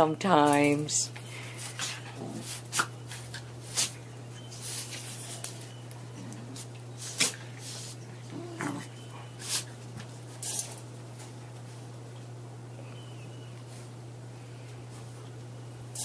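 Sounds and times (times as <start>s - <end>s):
steady low hum: 0.0s - 16.0s
puppies growling and whining: 1.8s - 9.6s.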